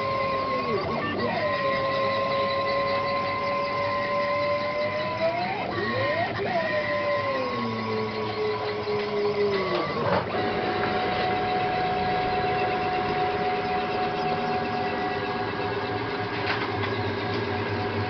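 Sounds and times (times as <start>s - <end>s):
machine running noise: 0.0s - 18.0s
stepper motors whining: 0.0s - 18.0s.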